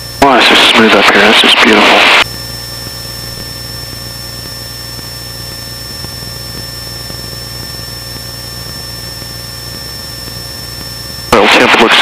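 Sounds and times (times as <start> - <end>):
thin high whine: 0.0 - 2.2, 8.7 - 12.0
airplane engine and propeller drone: 0.0 - 12.0.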